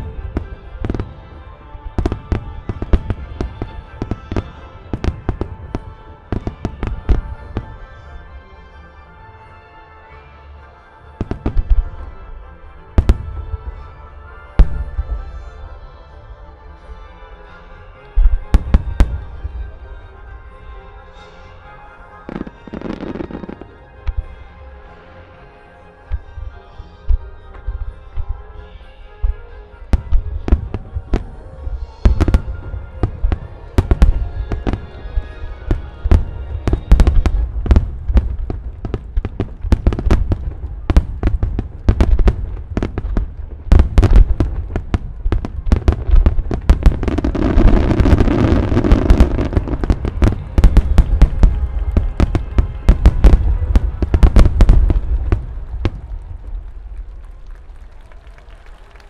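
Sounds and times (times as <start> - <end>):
fireworks bursting: 0.0 - 8.1, 30.0 - 57.4
faint music over loudspeakers: 0.0 - 59.0.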